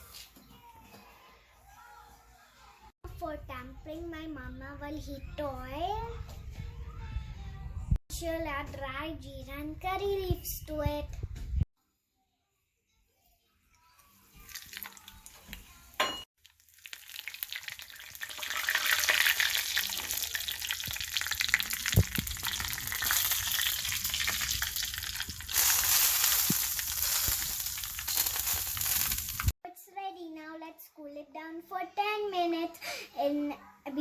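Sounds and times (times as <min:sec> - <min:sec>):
hot oil sizzling and crackling: 0:14.4 - 0:15.7, 0:16.4 - 0:29.5.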